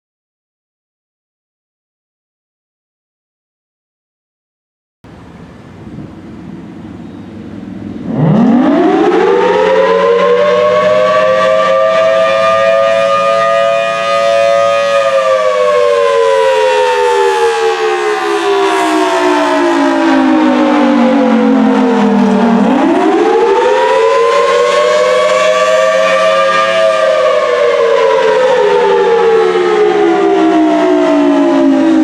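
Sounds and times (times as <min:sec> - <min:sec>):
siren wailing: 0:06.8 - 0:32.0.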